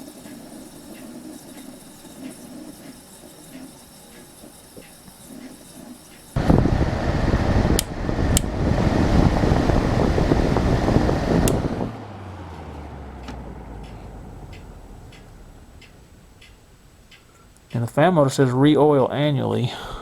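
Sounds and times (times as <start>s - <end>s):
air conditioner fan running: 6.4s - 17.7s
fan motor humming spinning down: 6.4s - 17.7s.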